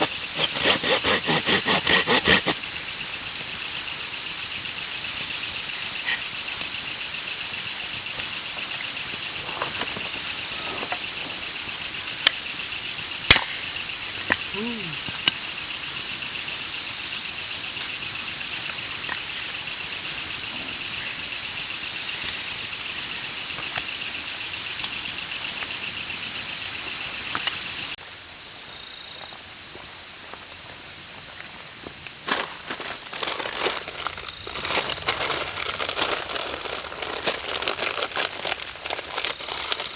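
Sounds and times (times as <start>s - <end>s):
sharp pops: 0.0s - 2.6s
insects trilling: 0.0s - 39.9s.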